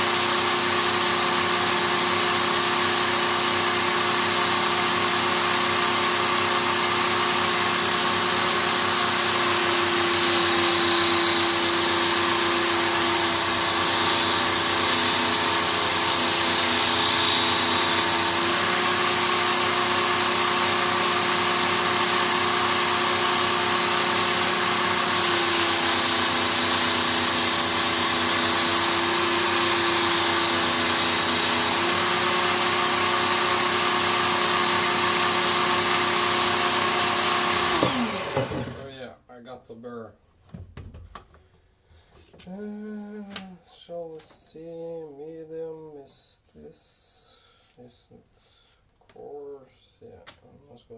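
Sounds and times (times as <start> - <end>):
belt sharpener grinding steel: 24.3 - 32.0.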